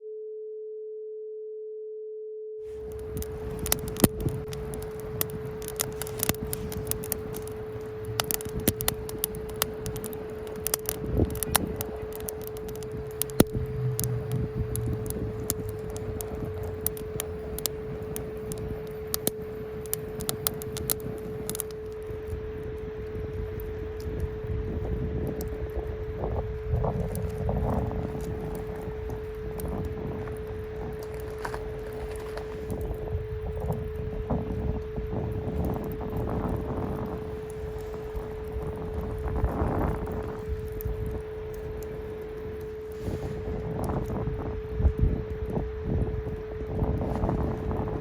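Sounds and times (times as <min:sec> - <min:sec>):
steady sine tone: 0:00.0 - 0:48.0
wood fire crackling: 0:02.7 - 0:48.0.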